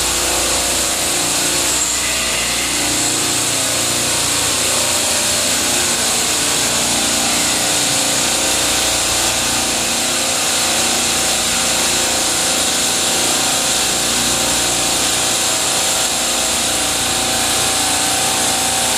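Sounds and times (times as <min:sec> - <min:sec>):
refrigeration compressors humming: 0:00.0 - 0:18.9
high-pitched hiss: 0:01.7 - 0:03.5.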